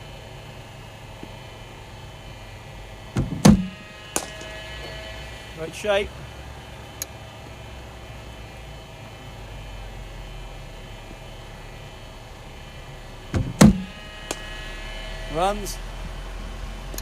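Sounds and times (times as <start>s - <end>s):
low hum: 0.0s - 17.0s
bat striking cricket ball: 3.5s - 5.0s.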